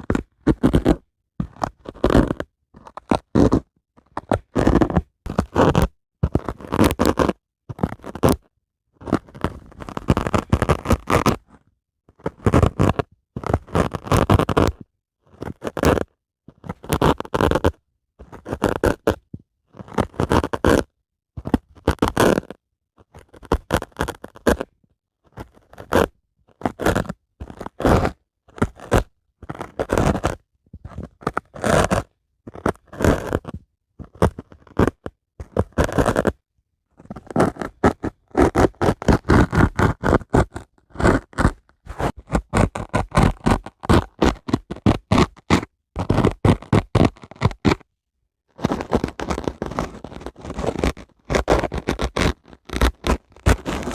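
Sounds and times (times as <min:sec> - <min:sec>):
dry sponge scraping: 0:41.9 - 0:42.4, 0:51.6 - 0:53.9.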